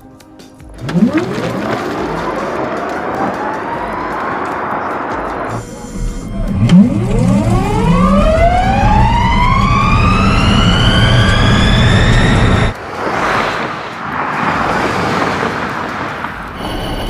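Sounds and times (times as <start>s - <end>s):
steady rushing noise: 0.8s - 5.6s, 9.0s - 17.0s
electric motors whining: 0.8s - 12.7s.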